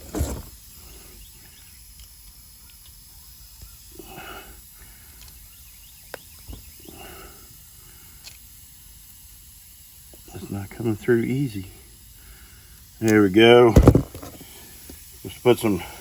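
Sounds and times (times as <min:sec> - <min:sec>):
faint hiss: 0:00.0 - 0:16.0
rubber plug being worked: 0:13.0 - 0:15.0.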